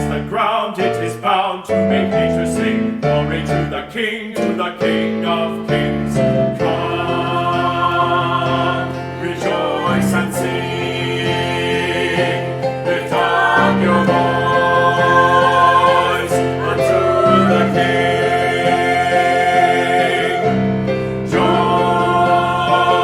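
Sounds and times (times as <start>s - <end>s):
choir singing held chords: 0.0s - 23.0s
piano accompaniment: 0.0s - 23.0s.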